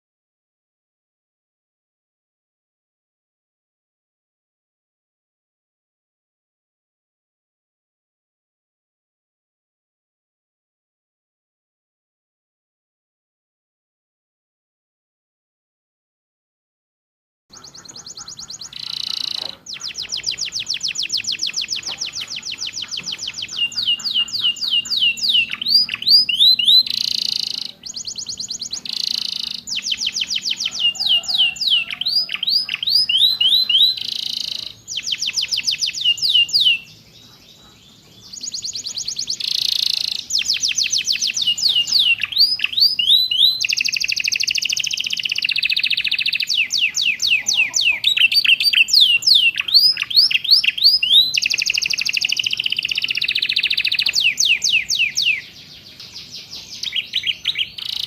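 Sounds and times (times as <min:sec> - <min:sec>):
canary singing trills: 0:17.5 - 0:58.0.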